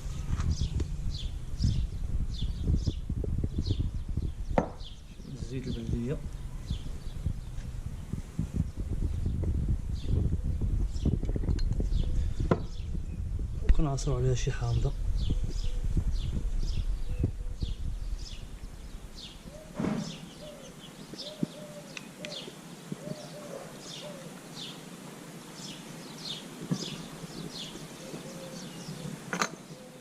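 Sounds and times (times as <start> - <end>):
low rumble: 0.0 - 20.6
small birds chirping: 0.0 - 30.0
sharp knocks: 4.6 - 4.9
dove cooing softly: 19.5 - 24.8, 27.7 - 30.0.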